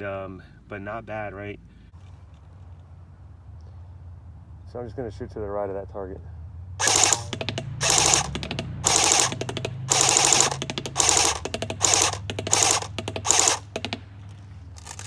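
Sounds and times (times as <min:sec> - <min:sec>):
airsoft rifle firing bursts: 0:06.8 - 0:14.0.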